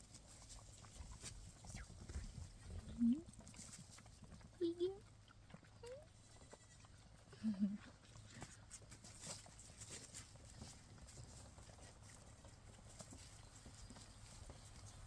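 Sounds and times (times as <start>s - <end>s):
goat kid bleating: 5.8s - 7.0s.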